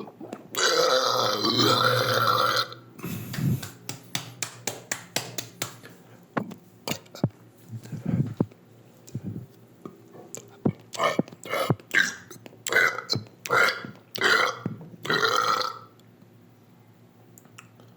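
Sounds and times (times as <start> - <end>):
person burping: 0.0 - 3.1, 11.0 - 15.9.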